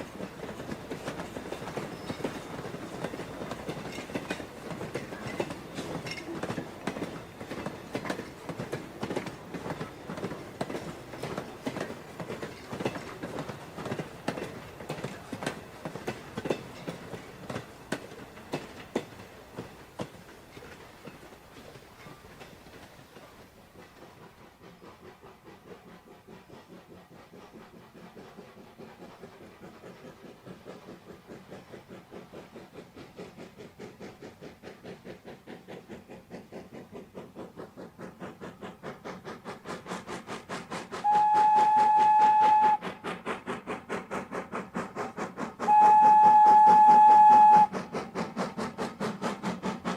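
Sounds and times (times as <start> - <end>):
train wheels clattering: 0.0 - 49.9
train whistle: 41.0 - 43.0, 45.6 - 47.9.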